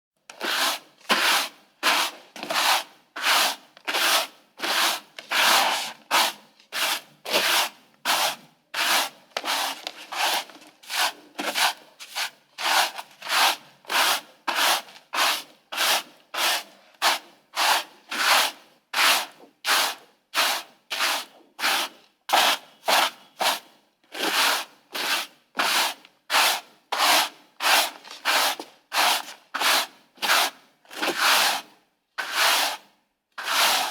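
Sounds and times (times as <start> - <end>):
broom sweeping: 0.4 - 23.7, 24.3 - 30.5, 31.1 - 33.9.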